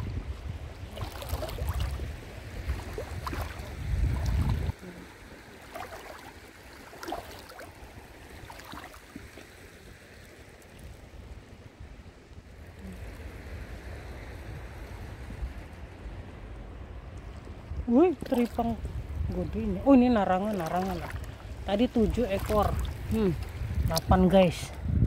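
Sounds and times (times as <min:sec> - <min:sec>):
shallow water sloshing: 0:00.0 - 0:25.0
wind rumble on microphone: 0:00.0 - 0:25.0.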